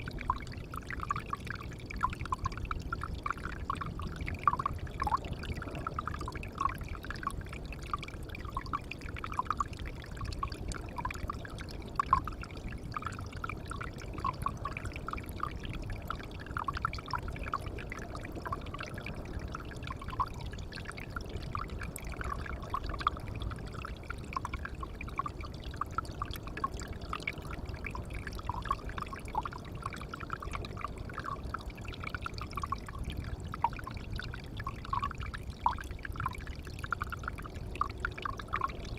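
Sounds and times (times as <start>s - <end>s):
water pouring into a pond: 0.0s - 38.9s.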